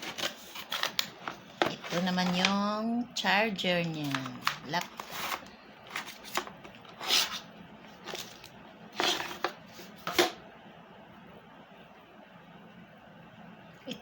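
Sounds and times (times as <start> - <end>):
laptop charger handling: 4.0 - 7.4, 8.0 - 10.4.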